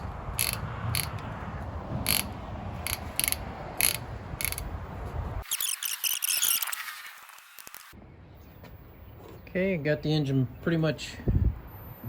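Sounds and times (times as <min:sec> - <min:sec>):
ratchet clicking: 0:00.0 - 0:01.3, 0:02.0 - 0:04.7.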